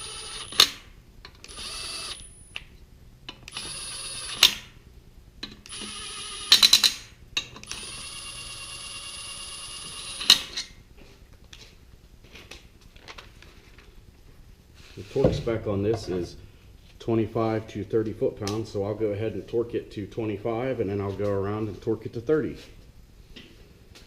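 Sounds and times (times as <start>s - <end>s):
impact driver motor whine: 3.5s - 4.7s.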